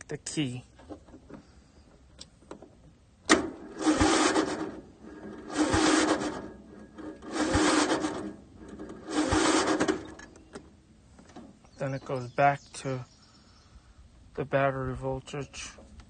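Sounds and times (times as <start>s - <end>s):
starter motor grinding: 3.2s - 10.8s.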